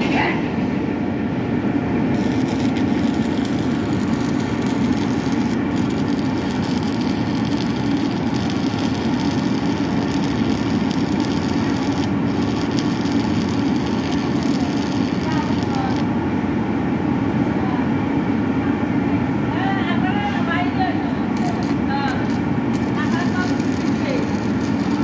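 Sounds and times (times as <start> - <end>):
steady machinery noise: 1.5 - 16.6, 21.3 - 25.0
faint fine crackle: 2.2 - 16.0, 22.8 - 25.0.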